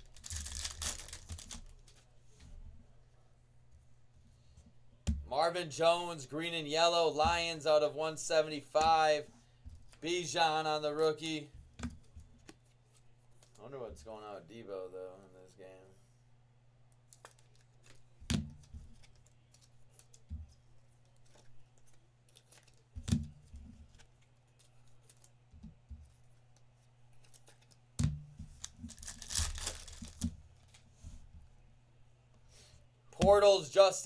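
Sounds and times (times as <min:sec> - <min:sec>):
foil pack tearing: 0:00.0 - 0:01.8, 0:28.6 - 0:30.4.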